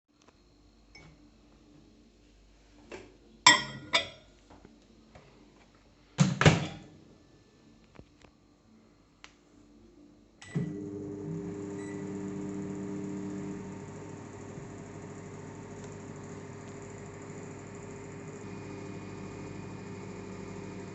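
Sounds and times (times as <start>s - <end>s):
microwave humming: 10.4s - 20.9s.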